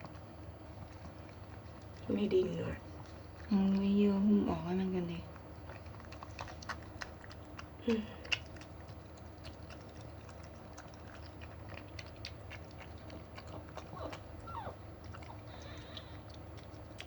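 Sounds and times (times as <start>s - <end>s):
dog licking puppy: 0.0s - 17.0s
puppy squeak: 13.9s - 16.0s.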